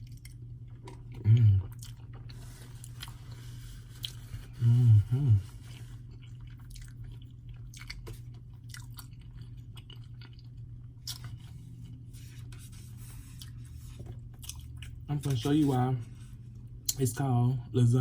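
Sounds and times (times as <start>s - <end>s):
person chewing: 0.0s - 15.1s
person humming: 1.2s - 1.6s, 4.5s - 5.6s.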